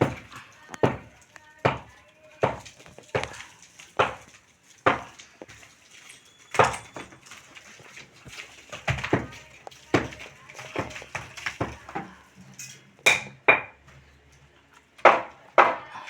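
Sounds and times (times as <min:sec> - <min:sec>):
hand tools striking hard materials: 0:00.0 - 0:05.6, 0:06.5 - 0:07.2, 0:08.2 - 0:12.2, 0:13.0 - 0:13.8, 0:15.0 - 0:15.9.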